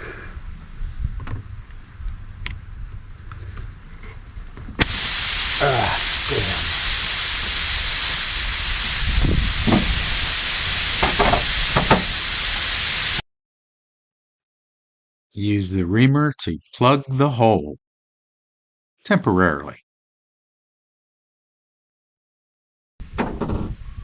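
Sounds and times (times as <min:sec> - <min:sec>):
air hissing out of tire: 0:04.6 - 0:13.2.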